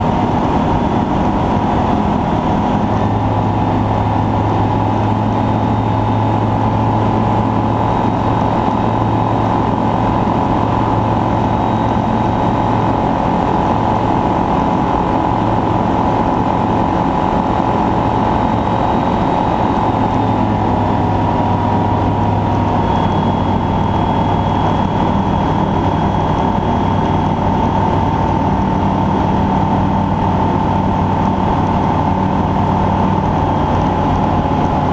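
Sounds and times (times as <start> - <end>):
microlight engine and propeller drone: 0.0 - 34.9.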